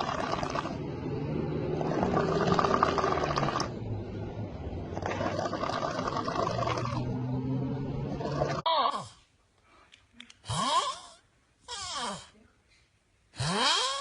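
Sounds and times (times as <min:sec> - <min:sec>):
person snoring: 0:13.4 - 0:14.0.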